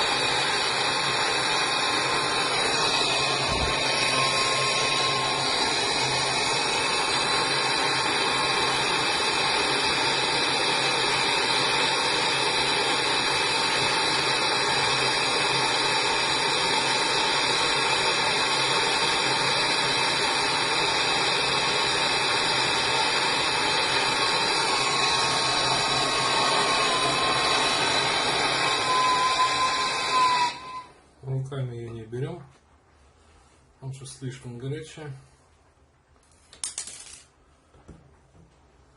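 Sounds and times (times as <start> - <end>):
gas torch hissing: 0.0 - 31.0.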